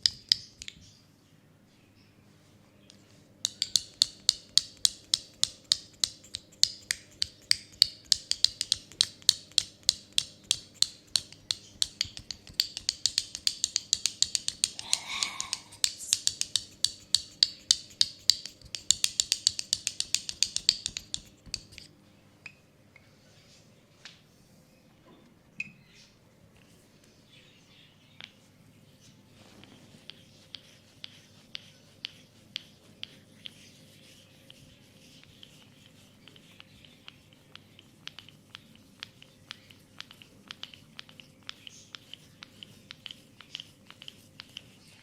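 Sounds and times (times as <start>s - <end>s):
rapid finger snapping: 3.4s - 21.9s, 34.5s - 45.0s.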